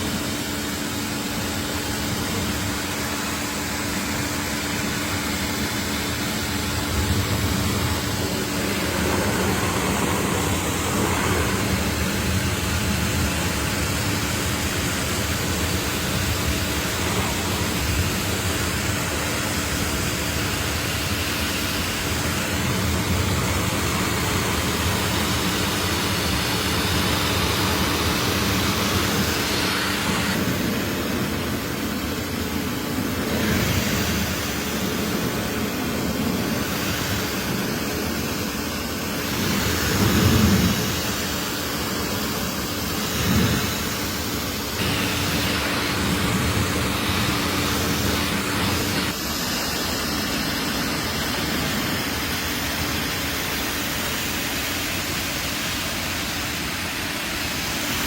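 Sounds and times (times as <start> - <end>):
pressure washer motor humming: 0.0 - 58.0
water spray hissing: 0.0 - 58.0.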